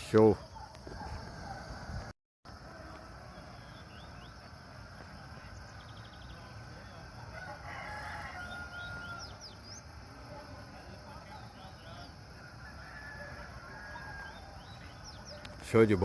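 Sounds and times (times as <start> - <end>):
rooster crowing: 0.8 - 2.1, 6.8 - 9.8, 12.1 - 15.1
small birds chirping: 2.7 - 7.2, 8.0 - 12.2, 13.7 - 16.0.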